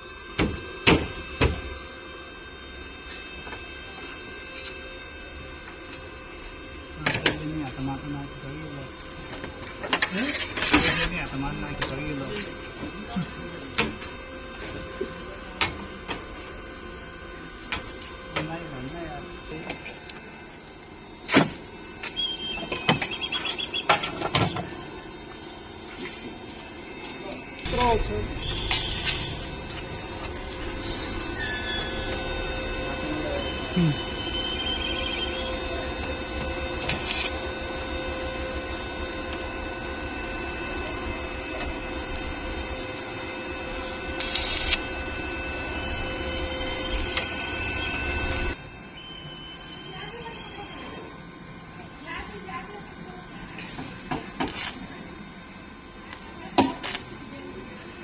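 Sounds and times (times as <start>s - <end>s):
machine whirring and humming: 0.0s - 58.0s
thin high wavering squeak: 30.3s - 35.9s.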